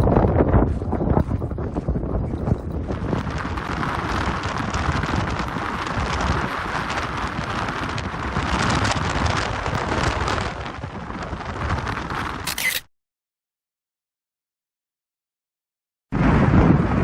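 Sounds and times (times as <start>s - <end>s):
strong wind on microphone: 0.0s - 12.9s, 16.1s - 17.0s.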